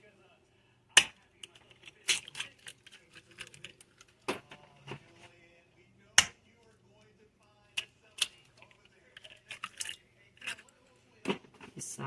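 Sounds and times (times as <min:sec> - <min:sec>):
eggs cracked on bowl edge: 0:00.9 - 0:04.6, 0:06.1 - 0:06.4, 0:07.8 - 0:10.8.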